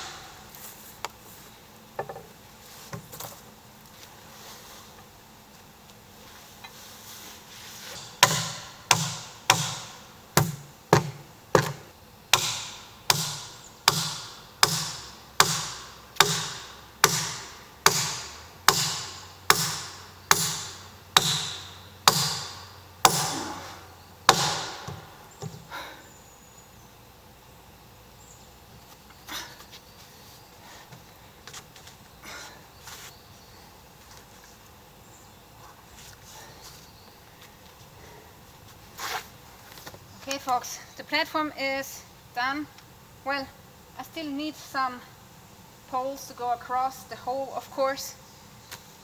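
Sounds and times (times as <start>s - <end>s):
heavy tool blows on wood: 0.0s - 0.8s, 12.4s - 26.0s.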